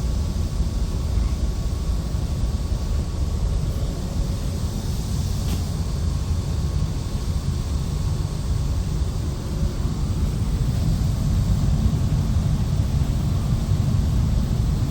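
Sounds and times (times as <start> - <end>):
faint steady hum: 0.0 - 14.9
ventilation blowers rumbling: 0.0 - 14.9
brief hiss: 5.1 - 5.8.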